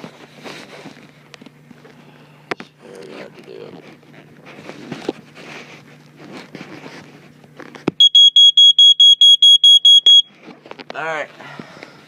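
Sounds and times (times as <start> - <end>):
smoke alarm beeping: 8.0 - 10.3.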